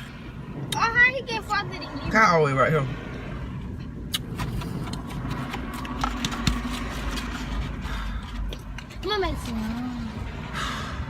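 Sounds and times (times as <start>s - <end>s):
eating clicks and scrapes: 4.0s - 9.9s.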